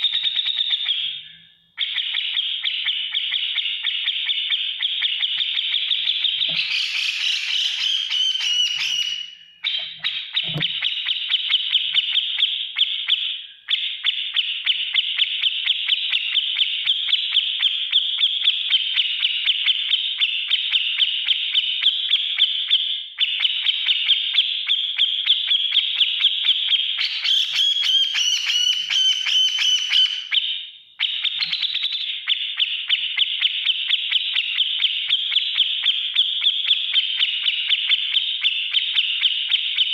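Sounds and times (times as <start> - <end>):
bird harsh chattering call: 6.4 - 11.0.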